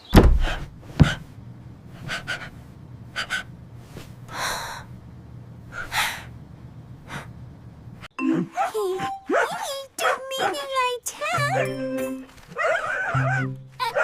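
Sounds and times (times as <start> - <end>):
low steady hum: 0.0 - 8.1.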